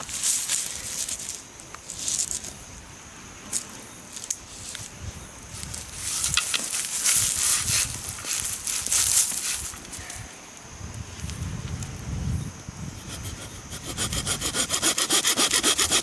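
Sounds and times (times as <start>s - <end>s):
rustling and crunching: 0.0s - 2.6s, 3.4s - 10.3s.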